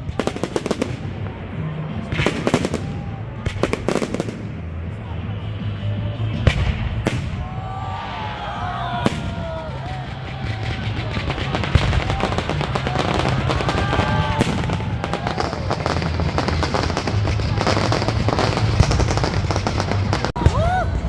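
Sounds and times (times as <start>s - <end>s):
fireworks bursting and crackling: 0.0s - 21.0s.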